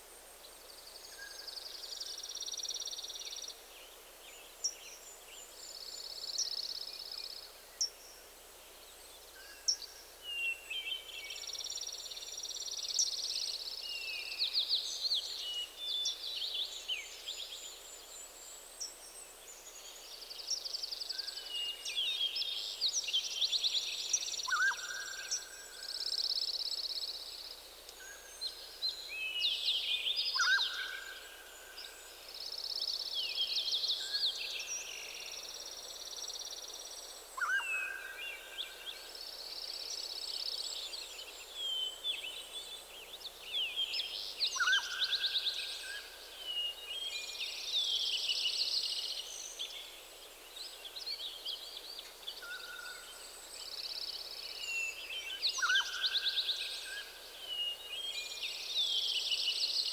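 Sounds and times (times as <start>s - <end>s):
songbirds singing: 27.9s - 59.9s.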